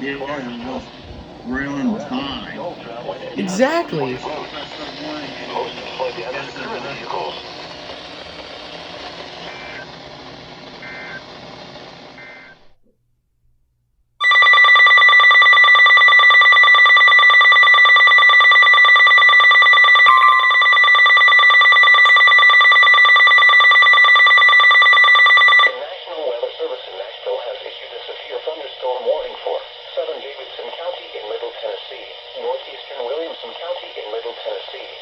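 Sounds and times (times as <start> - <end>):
loud steady alert tone: 3.4 - 4.2, 20.1 - 21.3
short beeps: 20.1 - 21.0.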